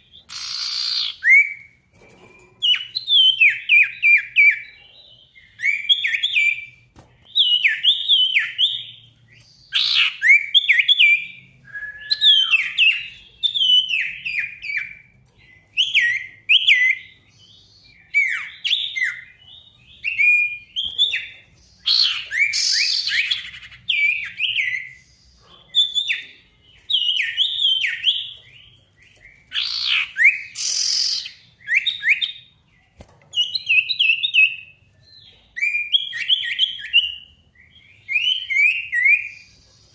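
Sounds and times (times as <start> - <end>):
harsh rasping bird calls: 0.0 - 4.8, 7.3 - 11.4, 12.0 - 32.4
songbird whistling song: 0.0 - 39.9.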